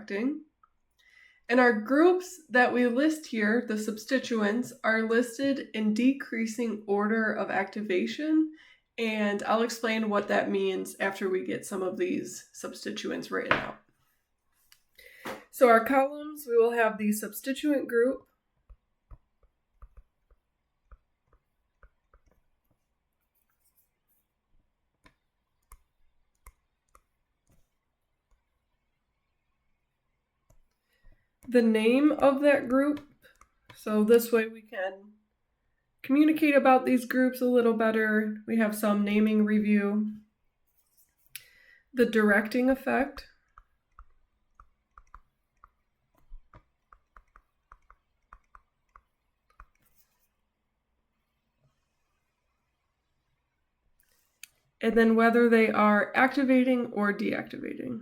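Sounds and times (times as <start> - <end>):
scratchy pen strokes: 19.8 - 24.4, 40.6 - 41.3, 43.4 - 50.4
pen clicking and tapping: 43.4 - 50.0
soft paper rustle: 49.5 - 50.4.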